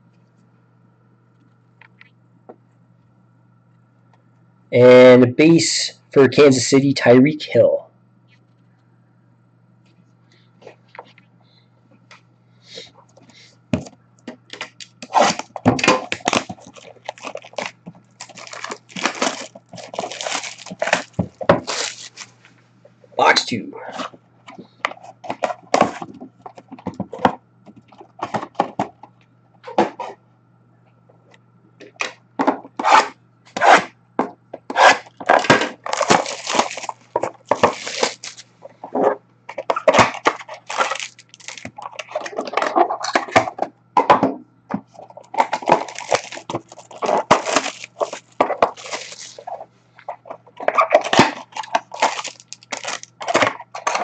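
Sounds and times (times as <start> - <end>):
plastic wrapping tearing and crinkling: 14.6 - 22.4, 34.8 - 38.5, 39.7 - 43.1, 45.1 - 54.0.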